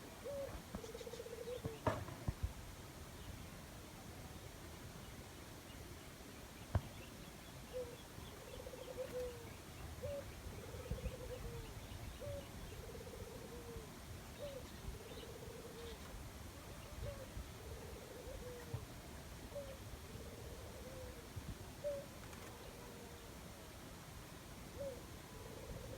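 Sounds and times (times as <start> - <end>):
dove cooing: 0.0 - 2.1, 7.7 - 23.5, 24.7 - 25.9.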